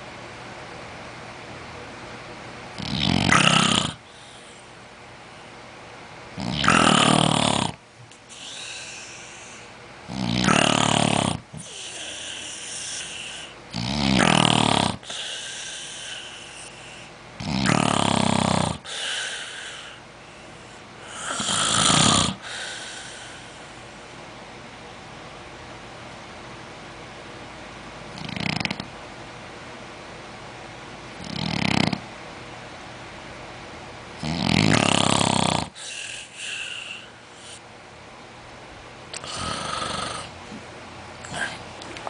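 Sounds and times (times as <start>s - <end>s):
snoring: 2.8s - 4.0s, 6.4s - 7.8s, 10.1s - 16.3s, 17.4s - 20.0s, 21.0s - 23.2s, 28.1s - 28.9s, 31.2s - 32.0s, 34.2s - 37.6s, 39.2s - 40.3s.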